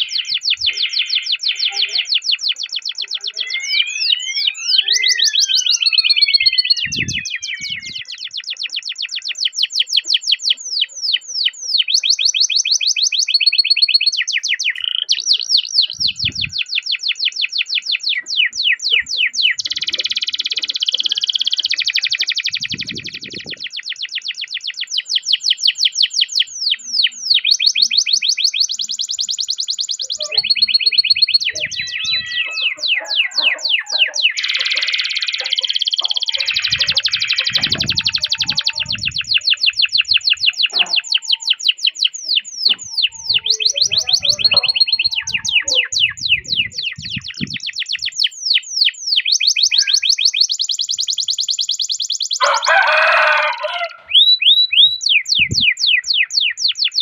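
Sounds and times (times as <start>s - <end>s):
canary singing: 0.0s - 57.0s.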